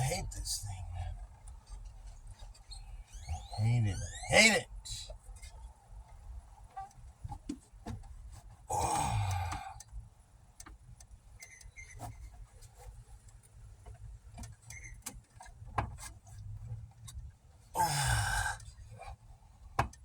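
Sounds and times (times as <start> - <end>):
sigh-like exhale: 17.8 - 18.6.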